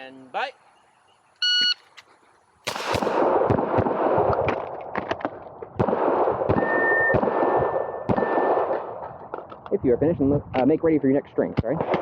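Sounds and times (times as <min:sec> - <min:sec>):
pistol firing rapid shots: 0:02.6 - 0:04.7, 0:05.8 - 0:09.2.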